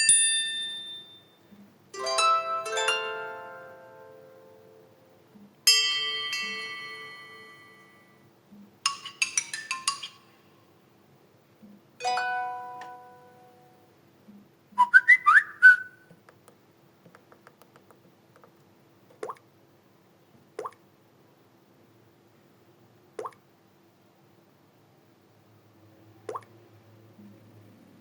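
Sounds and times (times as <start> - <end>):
bell-like chime: 0.0 - 1.4, 5.7 - 8.1.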